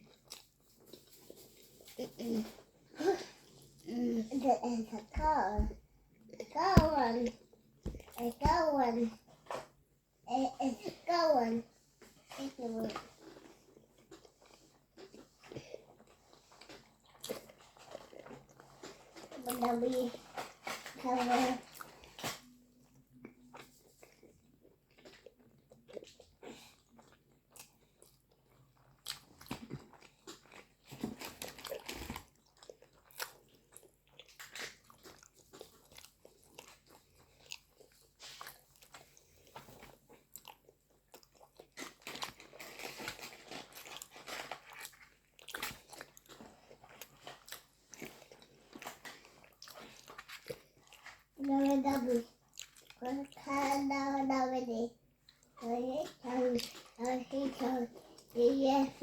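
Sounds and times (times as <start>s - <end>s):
food crunching: 0.0s - 1.9s, 21.6s - 53.5s, 55.2s - 57.0s
close-miked chewing: 0.0s - 2.6s, 12.9s - 19.8s, 21.6s - 53.8s, 55.2s - 58.4s.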